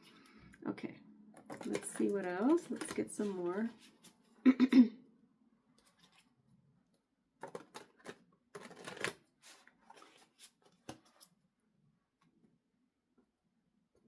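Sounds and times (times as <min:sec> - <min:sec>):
cards being shuffled: 0:01.4 - 0:04.2, 0:07.4 - 0:11.3.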